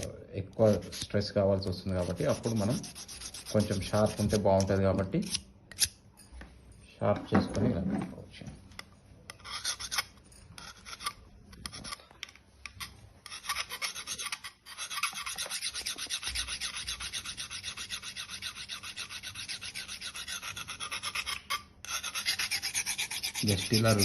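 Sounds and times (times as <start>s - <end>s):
knife scraping on sharpening rod: 1.9s - 6.0s, 9.3s - 12.0s, 12.6s - 24.0s.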